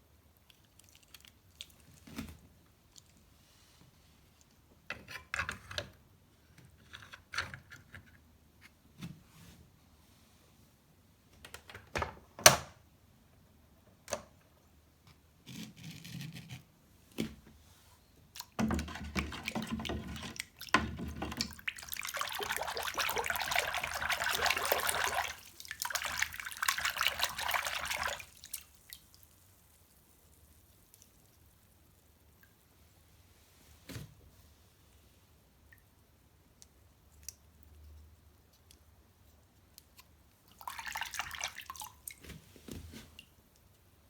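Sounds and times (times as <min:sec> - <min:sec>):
water running from tap: 0:21.5 - 0:28.6.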